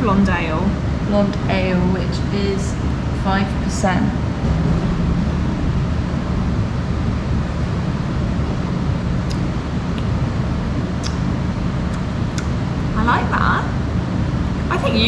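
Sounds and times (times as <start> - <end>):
low rumbling hum: 0.0 - 15.0
faint pitched drone: 1.5 - 9.5.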